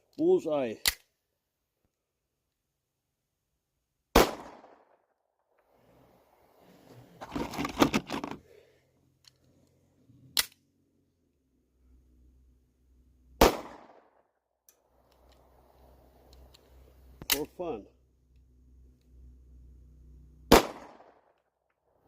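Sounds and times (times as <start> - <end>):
pistol shots: 4.1 - 5.0, 13.4 - 14.2, 20.5 - 21.4
sharp crack: 4.1 - 5.0, 13.4 - 15.4, 17.2 - 17.5, 20.5 - 21.4
gun handling noise: 7.2 - 8.4, 14.6 - 17.5.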